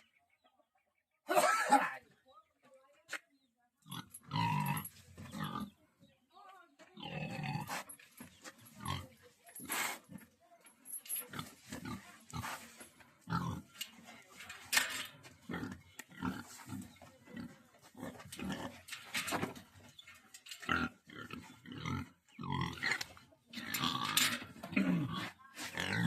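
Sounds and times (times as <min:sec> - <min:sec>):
pig grunting: 0:03.8 - 0:05.8, 0:07.0 - 0:10.3, 0:11.2 - 0:13.9, 0:15.1 - 0:19.9, 0:20.6 - 0:26.0.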